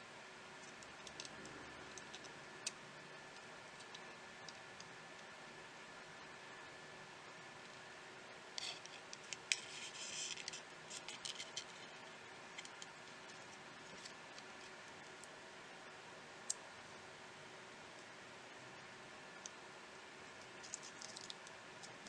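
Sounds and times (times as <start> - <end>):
steady background hiss: 0.0 - 22.0
light clicks and scratching: 0.6 - 5.3, 8.6 - 15.4, 20.4 - 22.0.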